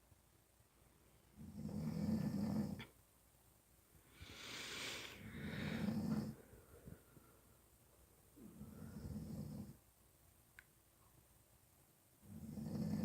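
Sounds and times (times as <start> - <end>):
rattling snoring: 1.4 - 2.9, 5.3 - 6.4, 8.5 - 9.8, 12.2 - 13.0
breathy rush of air: 4.0 - 7.6.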